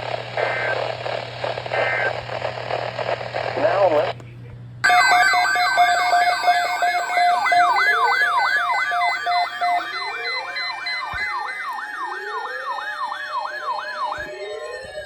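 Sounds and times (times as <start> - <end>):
siren wail: 4.8 - 15.0
siren yelping: 4.8 - 15.0.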